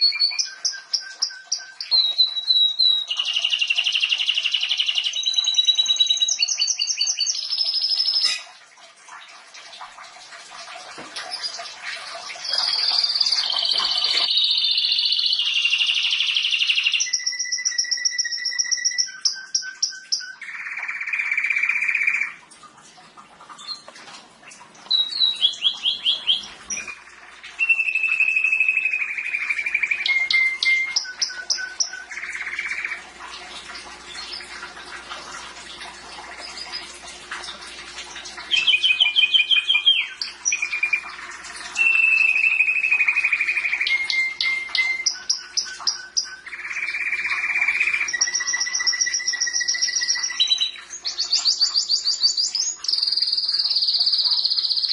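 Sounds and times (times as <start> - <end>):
canary singing trills: 0.0 - 8.5, 11.3 - 22.4, 24.9 - 33.0, 38.4 - 54.9.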